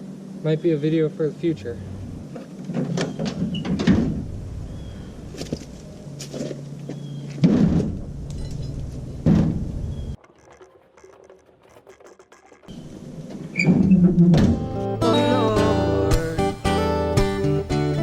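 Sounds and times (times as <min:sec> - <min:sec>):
steady low hum: 0:00.0 - 0:16.6
heavy thuds and clunks: 0:02.2 - 0:14.8.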